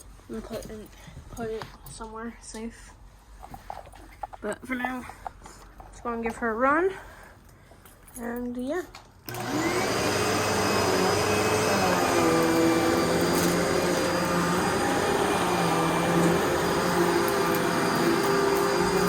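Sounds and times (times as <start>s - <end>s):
vacuum cleaner motor whining: 9.3s - 19.0s.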